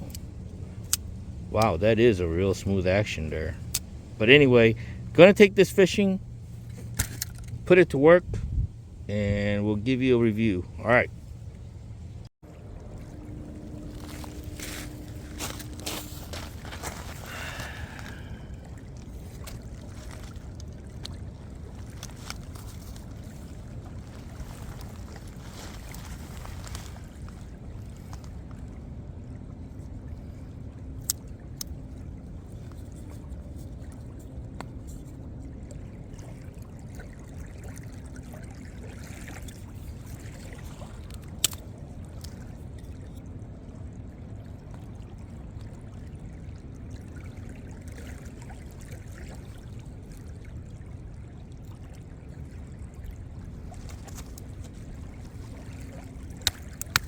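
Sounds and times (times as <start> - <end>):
water rushing: 12.4 - 28.7.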